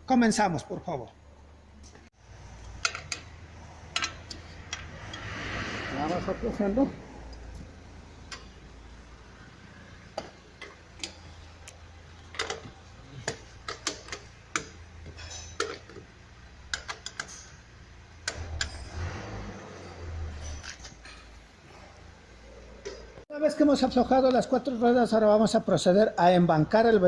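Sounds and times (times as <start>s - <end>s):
lug wrench clicking on wheel nuts: 2.5s - 5.3s, 8.2s - 8.6s, 10.1s - 19.4s.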